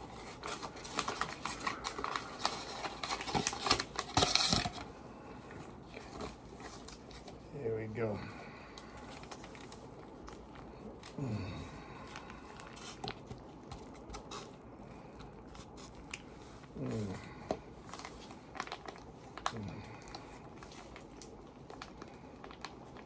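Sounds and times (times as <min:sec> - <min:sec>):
plastic food pouch crinkling: 0:00.0 - 0:04.9, 0:08.8 - 0:11.2, 0:12.0 - 0:16.7, 0:17.6 - 0:23.0.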